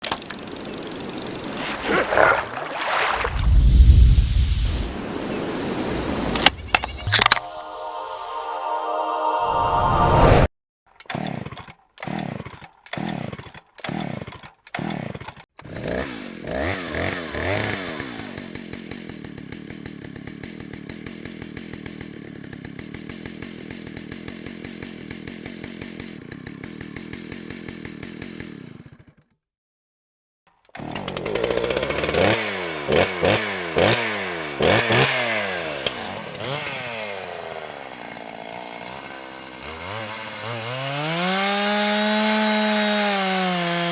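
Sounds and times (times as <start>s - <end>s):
chainsaw engine idling: 0.0s - 1.7s, 11.2s - 29.2s, 30.8s - 42.4s
chainsaw engine revving: 0.0s - 4.2s, 11.1s - 29.2s, 30.7s - 43.9s.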